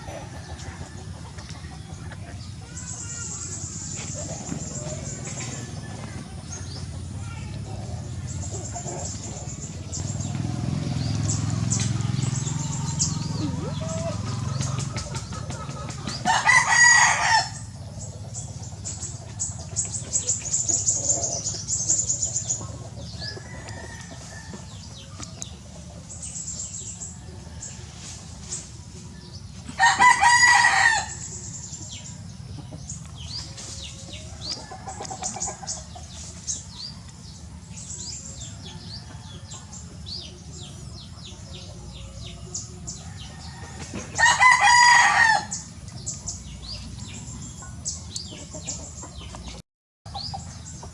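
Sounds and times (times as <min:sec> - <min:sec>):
small birds chirping: 0:00.2 - 0:50.9
rooster crowing: 0:16.2 - 0:17.7, 0:23.2 - 0:24.9, 0:29.7 - 0:31.3, 0:43.0 - 0:45.6.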